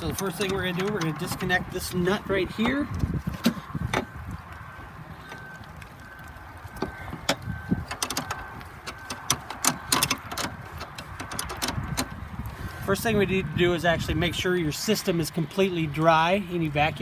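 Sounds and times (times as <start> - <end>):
wrench clicking and tapping metal: 9.1 - 12.1.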